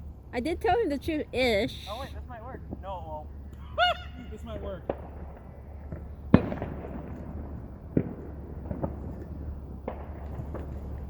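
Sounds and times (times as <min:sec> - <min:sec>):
firework bang with echo: 0:04.4 - 0:10.9
faint firework cracks: 0:04.8 - 0:11.0.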